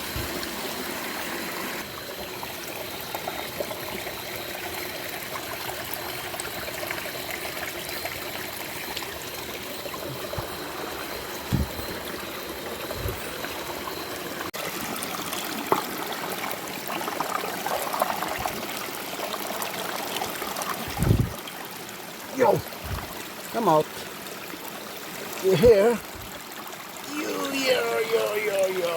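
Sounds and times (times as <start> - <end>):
creek water trickling: 0.0 - 28.9
short low thumps: 11.5 - 11.8, 20.9 - 21.4, 22.8 - 23.1.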